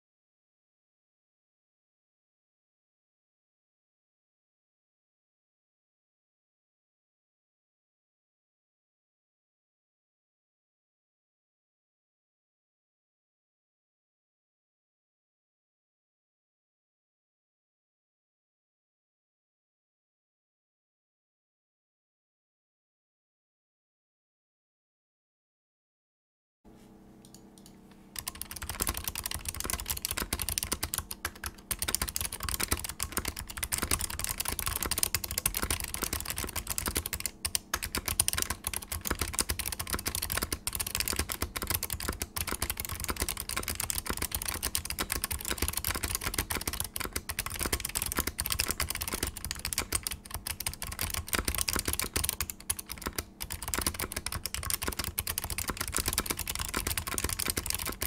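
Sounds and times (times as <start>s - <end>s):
fast typing on mechanical keyboard: 28.2s - 58.0s.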